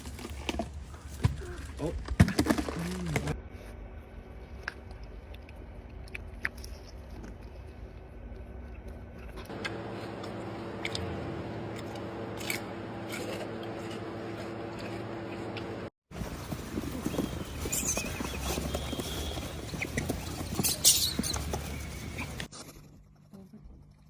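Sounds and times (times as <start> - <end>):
chewing with crunches: 4.3 - 15.9
steady hum: 9.1 - 15.9.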